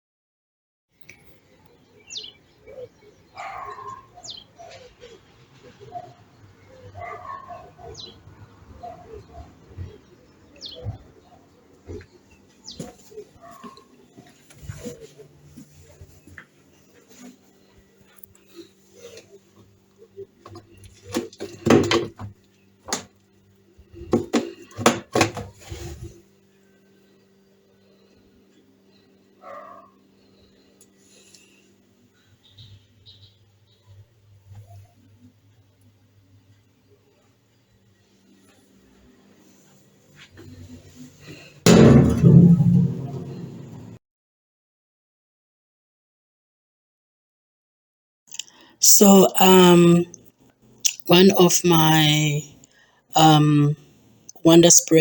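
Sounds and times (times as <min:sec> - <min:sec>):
household objects knocking and clattering: 0:24.1 - 0:25.5.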